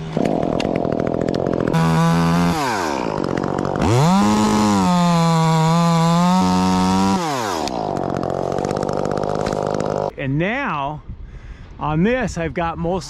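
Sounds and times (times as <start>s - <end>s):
chainsaw revving and cutting: 0.0s - 10.1s.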